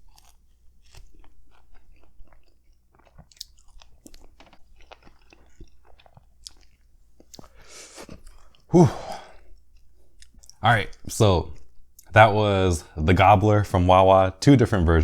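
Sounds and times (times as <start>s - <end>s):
close chewing with wet mouth clicks: 0.0s - 8.7s, 9.3s - 12.2s.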